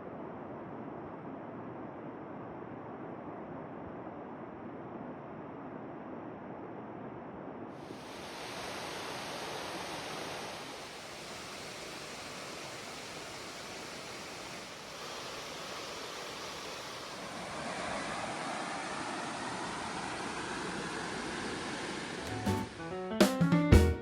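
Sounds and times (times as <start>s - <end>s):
waterfall rushing: 7.9s - 22.9s.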